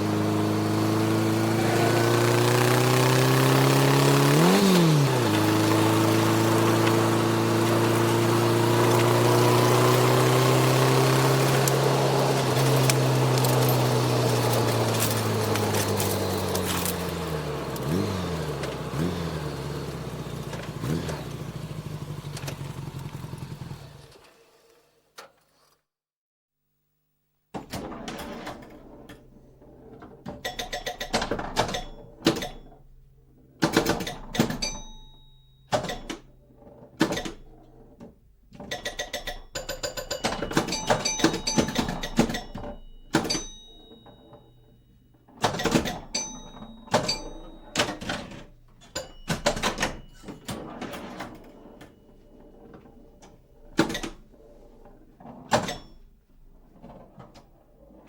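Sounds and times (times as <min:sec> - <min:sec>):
metallic rattling clatter: 0:04.0 - 0:19.0
high metallic ringing: 0:39.7 - 0:45.1, 0:46.1 - 0:47.9, 0:48.9 - 0:50.5.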